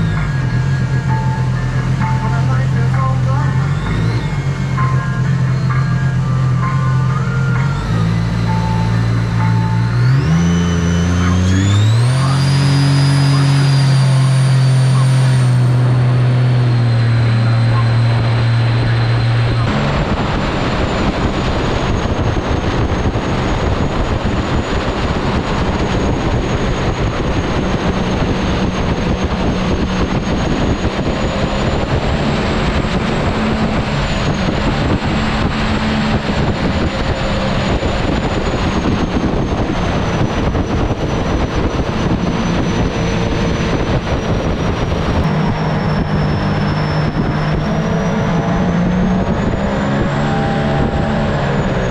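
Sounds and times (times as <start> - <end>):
boat engine drone: 0.0 - 51.9
high whine: 0.0 - 51.9
rushing wind and water: 18.0 - 51.9.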